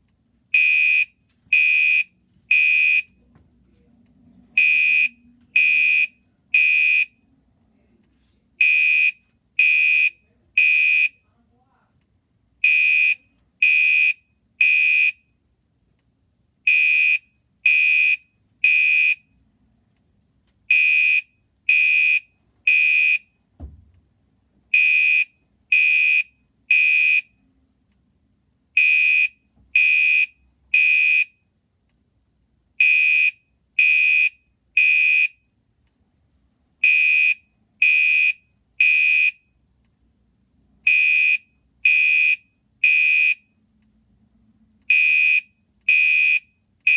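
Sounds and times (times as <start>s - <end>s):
fire alarm horn blasts: 0.5s - 3.1s, 4.6s - 7.1s, 8.6s - 11.2s, 12.6s - 15.3s, 16.7s - 19.2s, 20.7s - 23.4s, 24.7s - 27.4s, 28.8s - 31.4s, 32.8s - 35.5s, 36.8s - 39.5s, 40.8s - 43.6s, 44.9s - 46.9s
soft thump: 23.6s - 24.0s.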